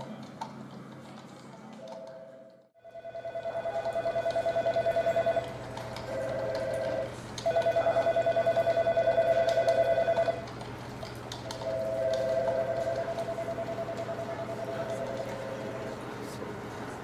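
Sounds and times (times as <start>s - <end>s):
electronic telephone ringing: 2.0s - 10.5s, 11.6s - 15.9s.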